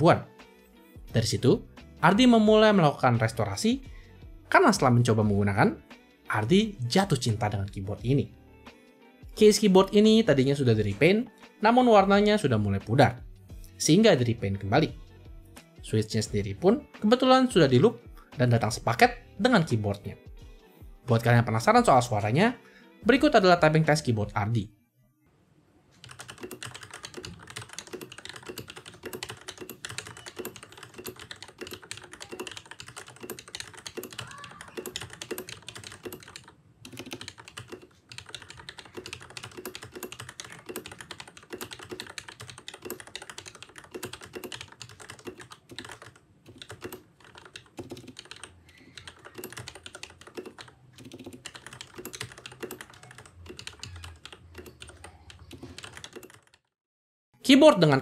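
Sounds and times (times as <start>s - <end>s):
mechanical keyboard typing: 26.0s - 56.7s.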